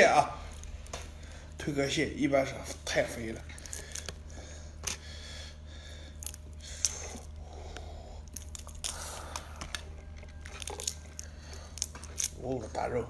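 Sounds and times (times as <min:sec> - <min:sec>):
person chewing crunchy crab: 0:03.4 - 0:12.4.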